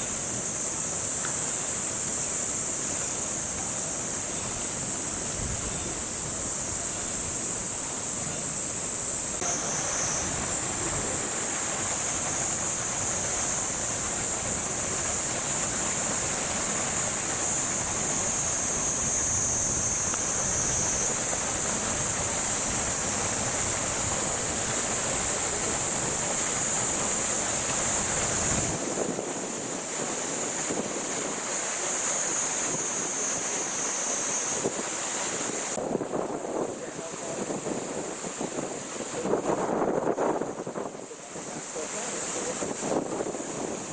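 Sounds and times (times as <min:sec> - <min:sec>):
cicada chorus drone: 0:00.0 - 0:43.9
wind buffeting microphone: 0:35.7 - 0:43.9.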